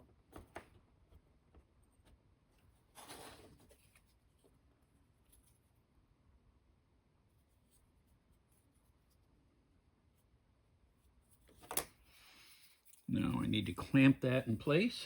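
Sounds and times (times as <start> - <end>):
soft scrape: 2.9 - 4.0.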